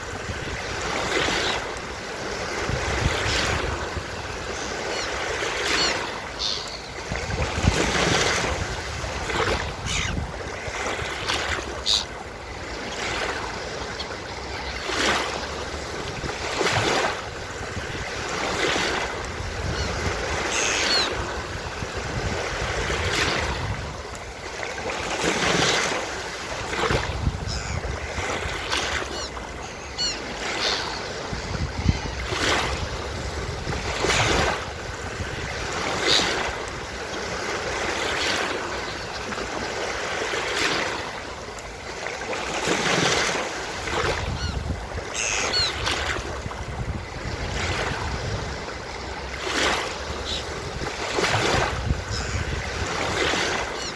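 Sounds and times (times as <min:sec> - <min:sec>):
waves breaking on a beach: 0:00.0 - 0:53.9
gull calls: 0:04.6 - 0:07.0, 0:09.7 - 0:10.2, 0:11.8 - 0:12.2, 0:19.6 - 0:21.4, 0:27.4 - 0:28.0, 0:28.8 - 0:31.2, 0:44.2 - 0:45.9, 0:50.2 - 0:50.6, 0:52.0 - 0:52.6, 0:53.4 - 0:53.9.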